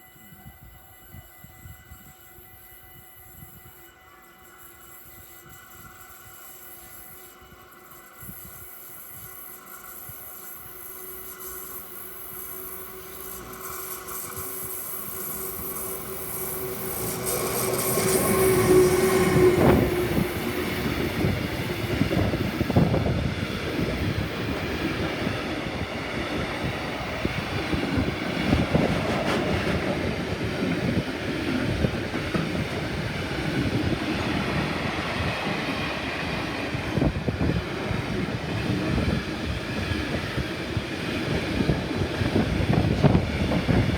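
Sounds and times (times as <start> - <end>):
locomotive hum: 1.2 - 43.9
wheels clacking over rail joints: 24.4 - 37.0.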